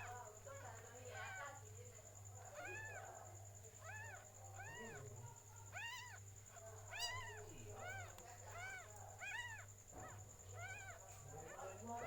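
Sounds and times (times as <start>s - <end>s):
cat mewing: 6.9s - 11.1s.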